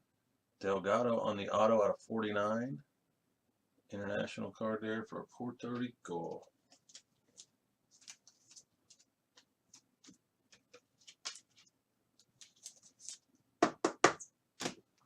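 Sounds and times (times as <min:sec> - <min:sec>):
trading cards clicking and rustling: 0:06.2 - 0:13.3.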